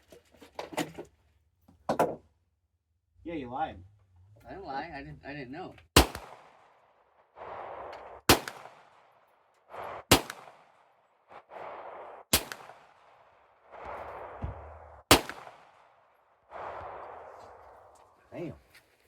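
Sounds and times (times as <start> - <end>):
pistol shots: 6.0 - 6.8, 8.2 - 9.2, 10.0 - 10.9, 12.3 - 14.4, 15.0 - 16.0.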